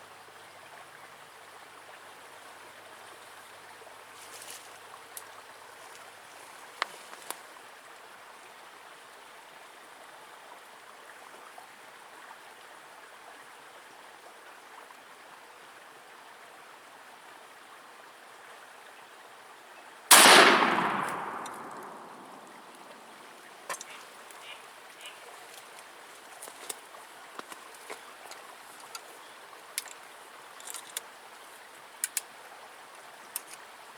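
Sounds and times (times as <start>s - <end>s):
stream water running: 0.0s - 33.9s
shotgun shot with echo: 20.1s - 23.1s.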